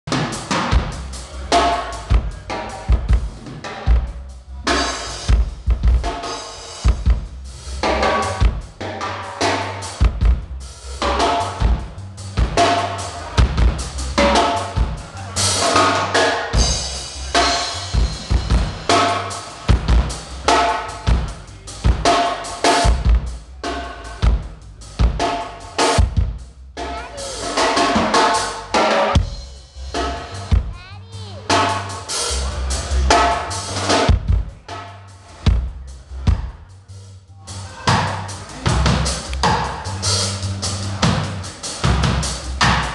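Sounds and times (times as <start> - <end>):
bass drum and snare hits: 0.1 - 15.0, 33.1 - 34.9.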